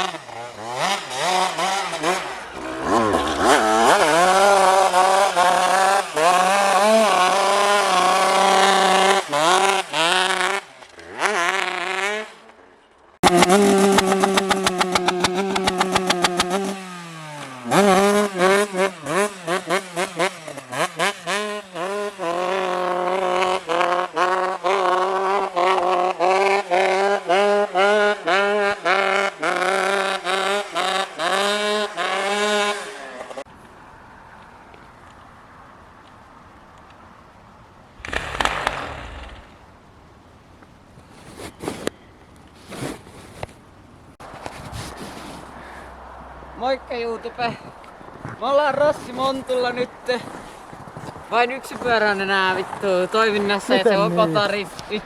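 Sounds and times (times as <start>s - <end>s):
dirt bike engine revving: 0.0s - 33.5s.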